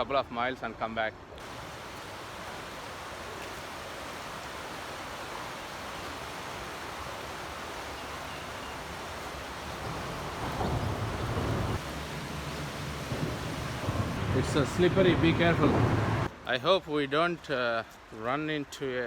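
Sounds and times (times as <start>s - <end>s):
stream rushing: 1.4s - 16.5s.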